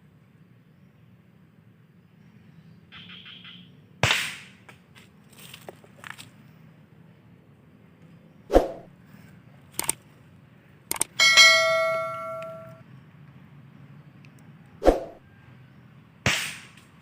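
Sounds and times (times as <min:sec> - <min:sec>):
sharp click: 0:09.8 - 0:10.0, 0:10.9 - 0:12.8
steel target ringing: 0:11.2 - 0:12.8
air rifle shot: 0:16.3 - 0:16.7.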